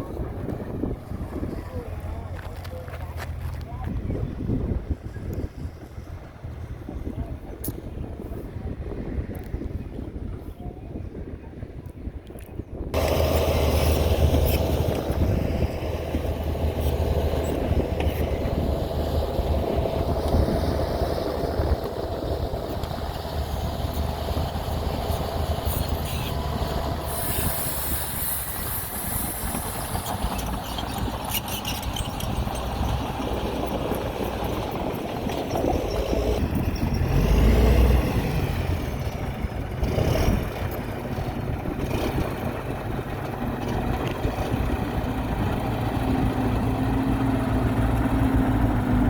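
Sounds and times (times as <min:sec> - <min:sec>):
heavy diesel engine running: 0:12.9 - 0:49.0
high hiss: 0:27.1 - 0:29.9.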